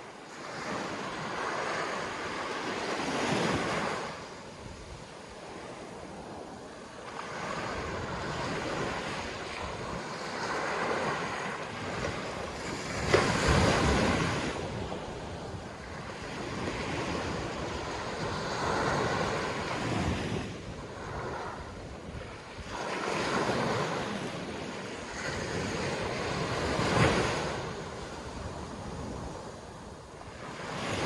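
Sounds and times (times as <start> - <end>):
sea waves breaking on beach: 0.0 - 31.0
wind buffeting microphone: 7.3 - 31.0.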